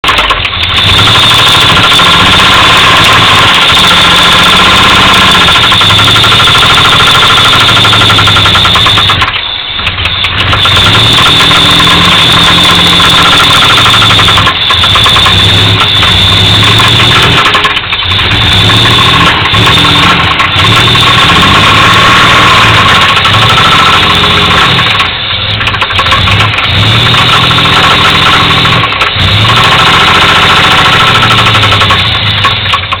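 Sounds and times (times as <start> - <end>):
car engine revving with knock: 0.0 - 33.0.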